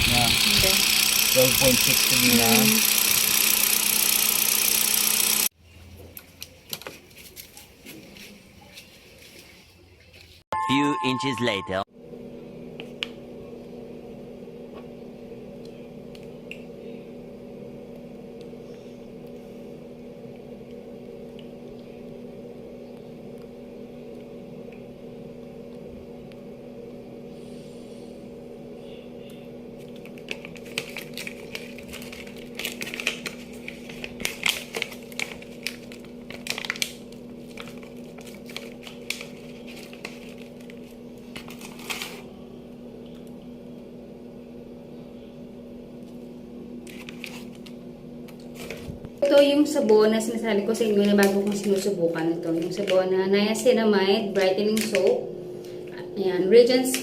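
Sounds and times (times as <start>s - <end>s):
steady low hum: 11.5s - 57.0s.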